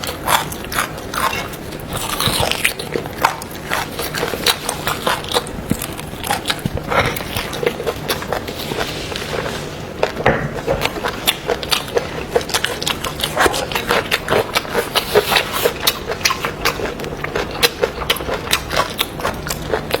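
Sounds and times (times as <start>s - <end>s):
person chewing and smacking: 0.0s - 20.0s.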